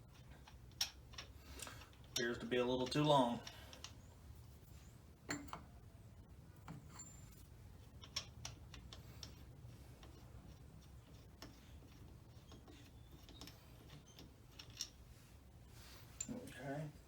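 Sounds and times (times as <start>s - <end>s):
low room hum: 0.0s - 17.0s
tools clicking and tapping: 0.1s - 4.0s, 5.3s - 5.7s, 7.9s - 15.0s.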